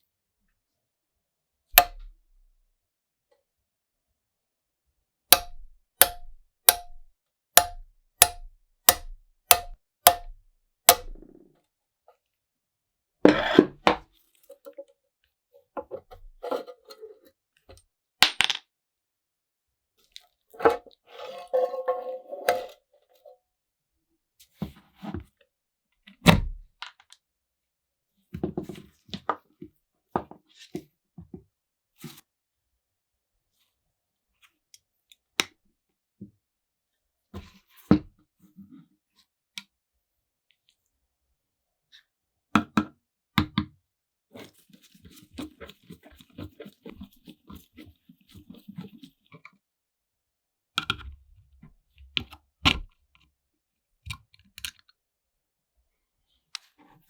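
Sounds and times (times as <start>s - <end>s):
hammer tapping on metal: 1.8s - 2.0s, 5.4s - 10.3s, 10.9s - 11.2s
knocks and clunks of tools: 10.9s - 11.3s.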